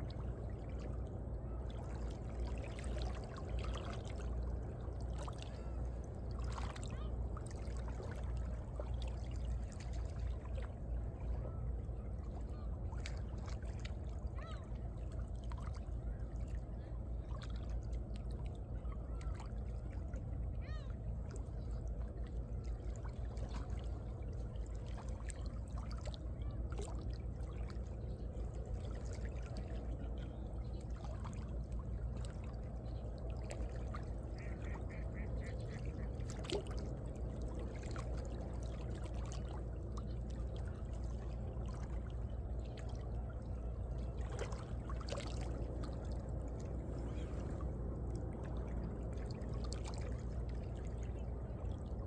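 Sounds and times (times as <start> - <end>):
waves lapping between rocks: 30.9 - 43.4, 44.0 - 52.0.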